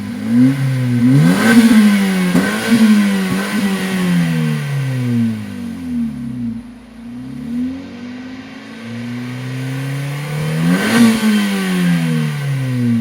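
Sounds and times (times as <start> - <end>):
car engine revving: 0.0 - 13.0.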